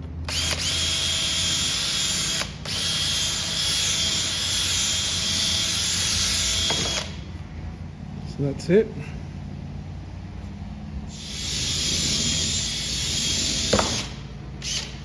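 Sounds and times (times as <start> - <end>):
power drill whining: 0.3 - 7.4, 11.1 - 15.0.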